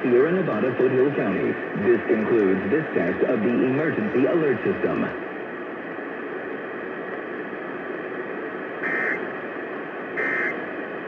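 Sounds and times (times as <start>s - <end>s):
radio hiss: 0.0s - 6.5s, 7.3s - 11.0s
harsh data bursts: 8.8s - 9.2s, 10.2s - 10.6s.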